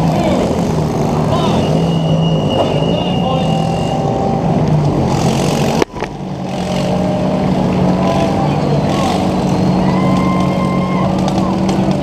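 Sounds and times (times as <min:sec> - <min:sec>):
small engine running steadily: 0:03.2 - 0:12.0.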